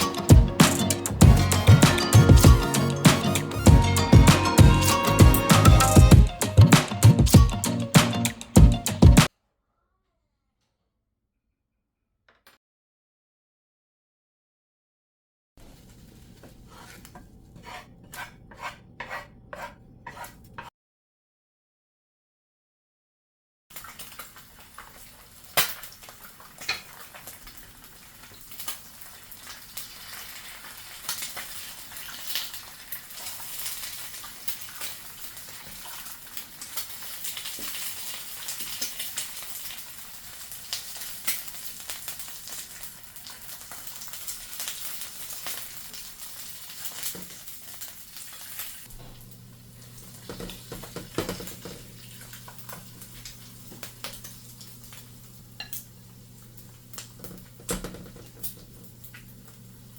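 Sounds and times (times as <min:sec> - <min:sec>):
utensil scraping a pan: 0:15.6 - 0:20.7
food sizzling in a frying pan: 0:23.8 - 0:59.9.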